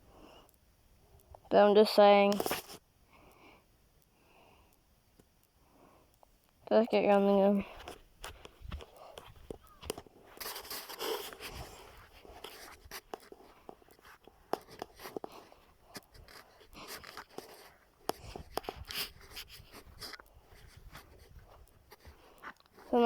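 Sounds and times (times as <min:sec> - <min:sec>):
clicks and taps: 0:07.8 - 0:10.6.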